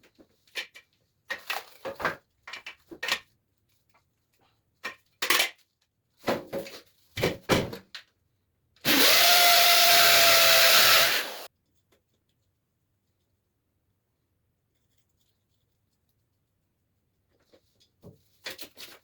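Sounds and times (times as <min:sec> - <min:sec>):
electric drill drilling into wall: 0:08.8 - 0:11.5.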